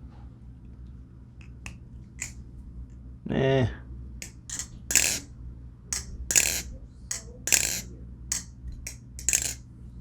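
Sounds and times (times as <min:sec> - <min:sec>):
butterfly knife clicking: 0:04.2 - 0:05.2, 0:06.0 - 0:09.6.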